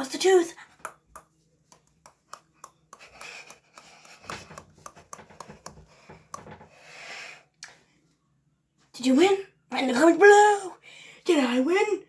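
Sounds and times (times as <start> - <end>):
teeth grinding: 1.8 - 6.4.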